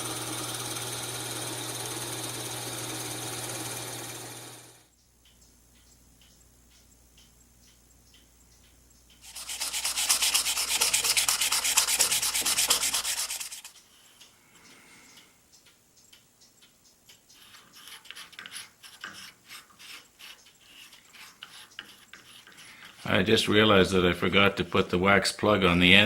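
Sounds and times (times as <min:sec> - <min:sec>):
sandpaper rubbing: 0:09.2 - 0:13.7, 0:17.4 - 0:23.2.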